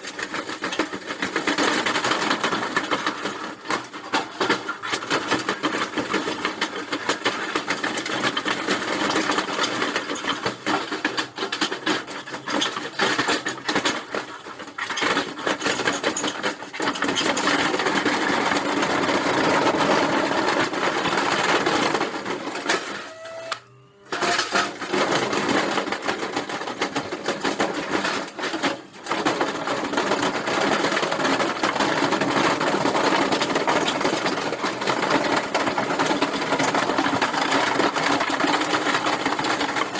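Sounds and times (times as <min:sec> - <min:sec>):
washing machine rattling: 0:24.2 - 0:39.9.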